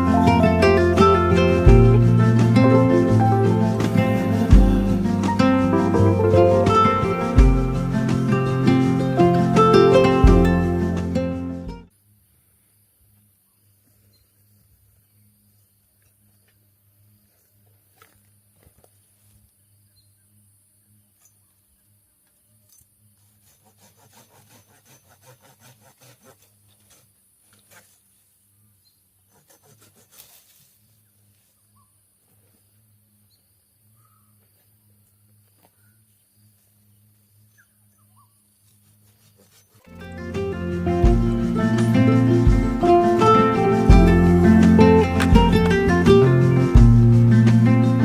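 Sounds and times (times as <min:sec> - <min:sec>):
soft rustling and scratching: 0:22.7 - 0:28.4, 0:29.3 - 0:32.8, 0:38.6 - 0:40.0.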